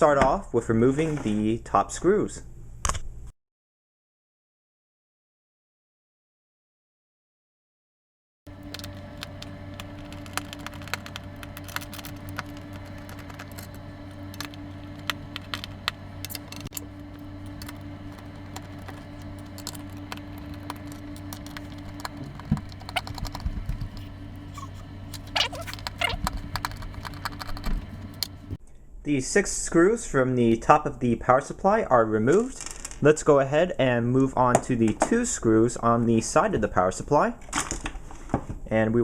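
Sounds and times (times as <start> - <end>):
screwdriver clicks and scrapes: 8.5 - 28.6
steady low hum: 8.5 - 28.6.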